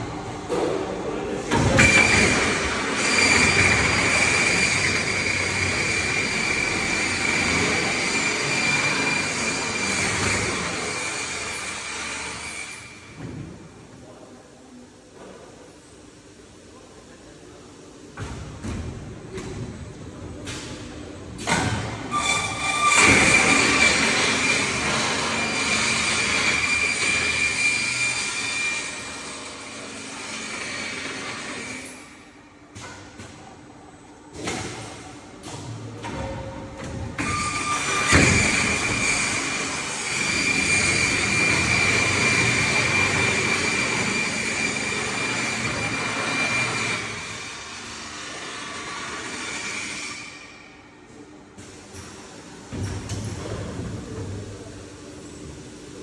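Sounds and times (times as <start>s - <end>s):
high squeal: 22.1s - 29.2s, 37.2s - 47.5s.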